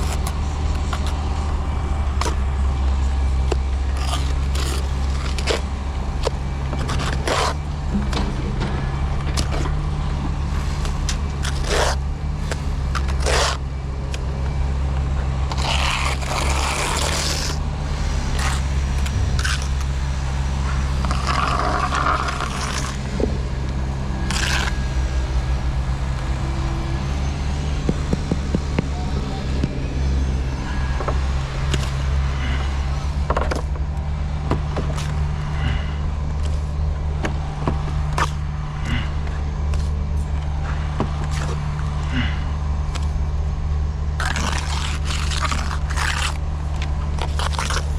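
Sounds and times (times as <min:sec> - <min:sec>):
low engine drone: 0:00.0 - 0:47.9.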